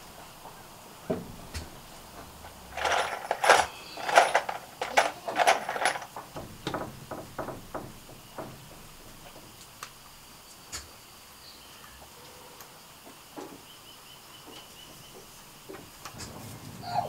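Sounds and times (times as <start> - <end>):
metallic clanks and rattles: 1.1 - 9.6.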